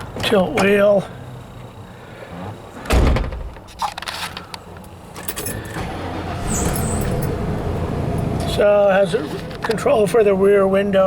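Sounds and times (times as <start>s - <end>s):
vehicle door shutting: 2.3s - 9.9s.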